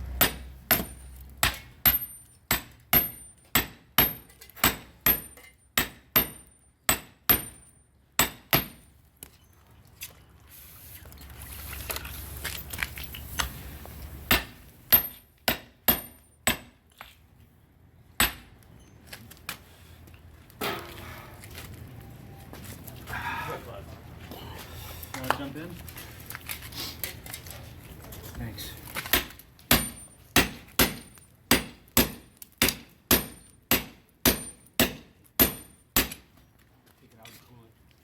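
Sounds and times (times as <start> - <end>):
hammer striking metal chisel: 0.2 - 8.9, 14.3 - 16.7, 29.1 - 36.3.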